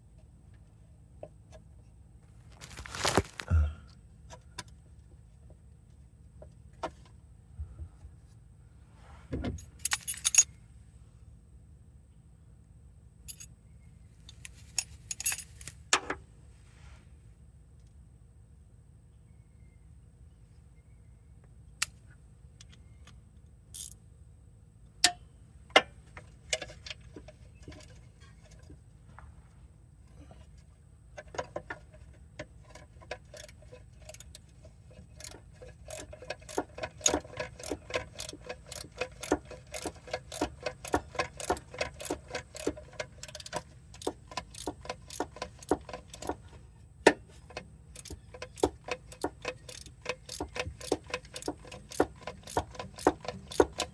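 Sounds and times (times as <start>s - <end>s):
metal clanks and taps: 25.0s - 29.3s, 30.1s - 53.9s
ratchet wrench clicking: 32.7s - 34.5s, 35.1s - 46.4s, 47.9s - 53.9s.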